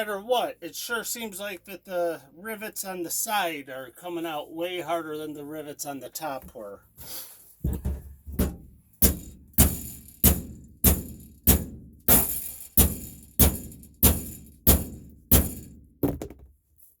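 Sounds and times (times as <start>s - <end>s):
hammer striking a punch: 8.4s - 16.3s.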